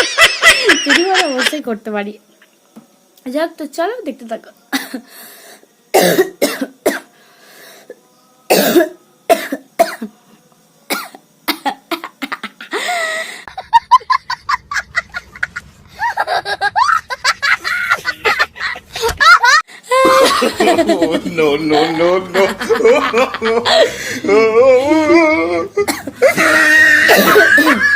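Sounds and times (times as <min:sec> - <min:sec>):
woman laughing: 0:00.0 - 0:01.7, 0:12.4 - 0:21.2, 0:21.8 - 0:24.0, 0:26.2 - 0:27.9
woman coughing: 0:04.7 - 0:05.0, 0:06.0 - 0:07.1, 0:08.5 - 0:10.1, 0:25.9 - 0:27.9.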